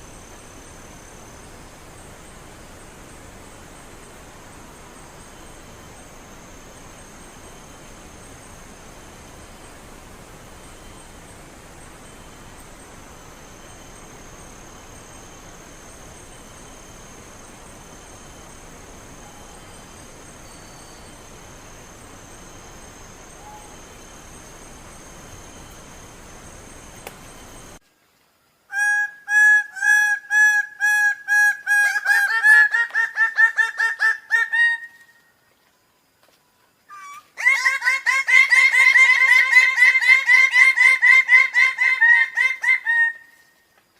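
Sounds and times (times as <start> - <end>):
faint high whine: 0.0 - 28.7
steady hiss: 0.0 - 28.7.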